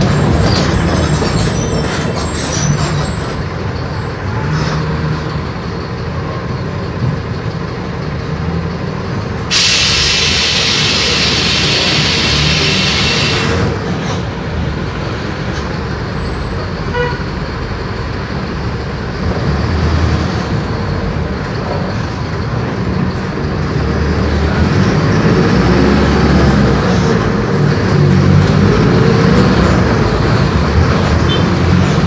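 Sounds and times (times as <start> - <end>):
bus diesel engine running: 0.0 - 32.0
air hiss: 9.5 - 13.7.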